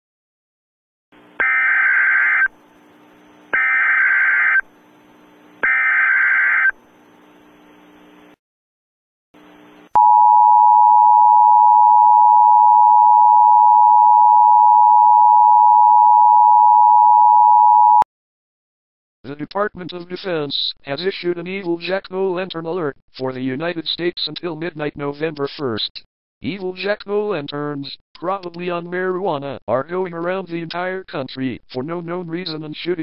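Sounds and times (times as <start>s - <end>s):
data bursts screeching: 1.4s - 2.6s, 3.6s - 4.7s, 5.6s - 6.8s.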